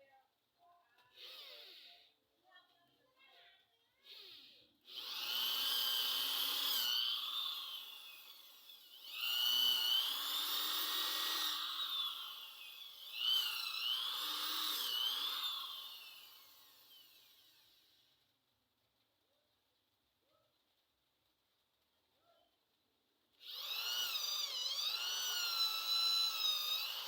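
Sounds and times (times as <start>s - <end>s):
electric grinder whining on steel: 4.9s - 17.8s, 23.4s - 27.0s.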